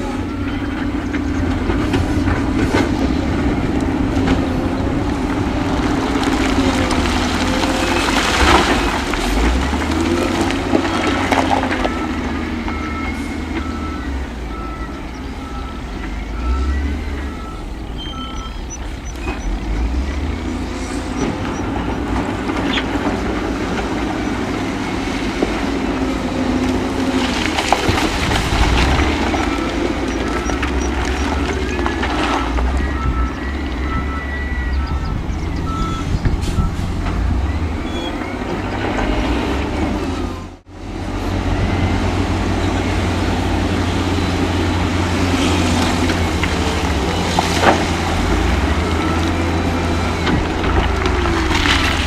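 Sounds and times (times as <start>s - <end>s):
heavy machine diesel engines: 0.0s - 52.0s
reversing alarm beeping: 11.5s - 21.9s, 28.7s - 39.2s.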